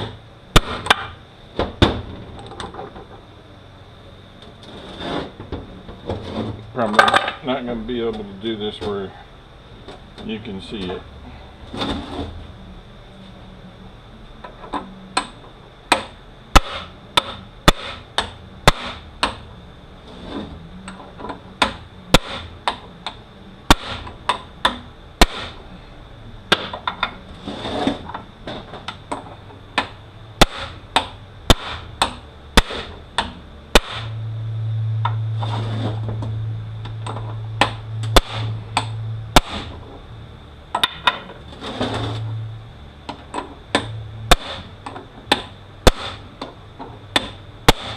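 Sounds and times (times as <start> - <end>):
low steady hum: 0.0 - 47.9
sharp hammer blows on metal: 33.8 - 34.2, 37.6 - 38.6.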